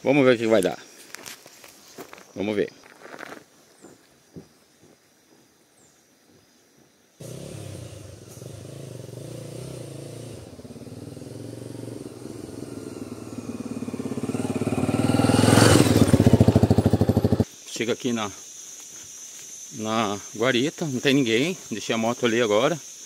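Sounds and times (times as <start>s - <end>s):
motorcycle engine running: 7.2s - 17.4s.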